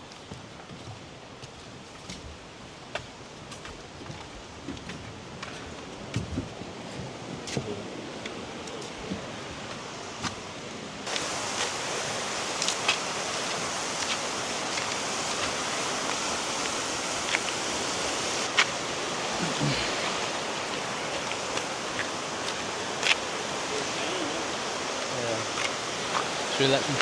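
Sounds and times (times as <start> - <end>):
fast-flowing river water: 5.7 - 27.0.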